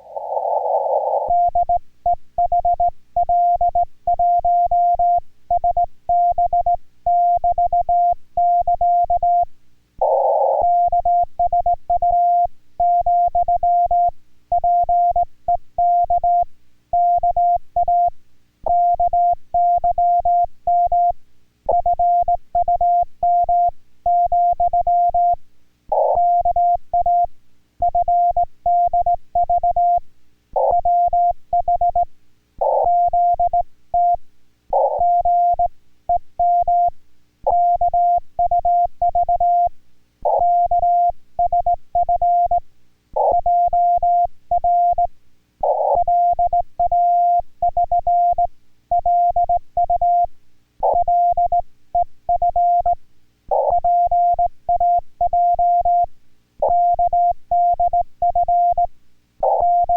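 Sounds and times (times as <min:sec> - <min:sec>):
scratchy static bursts: 0:00.0 - 0:01.4
morse code tone: 0:52.3 - 0:59.9.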